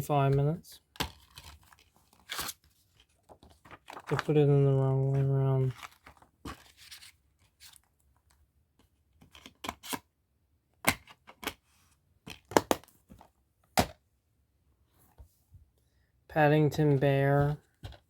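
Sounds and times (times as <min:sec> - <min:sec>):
plastic case clicks and snaps: 0:12.3 - 0:12.9.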